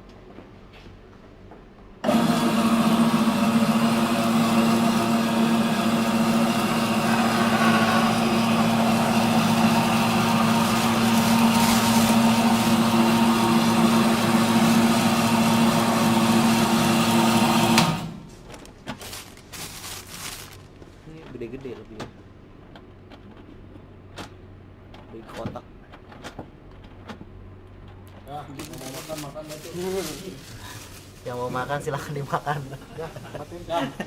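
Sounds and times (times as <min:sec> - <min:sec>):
noodle machine motor humming: 0:02.0 - 0:18.4.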